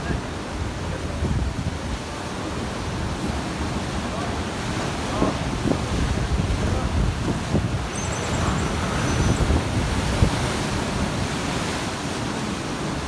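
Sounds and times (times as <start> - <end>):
wind rumbling on microphone: 0.0 - 13.0.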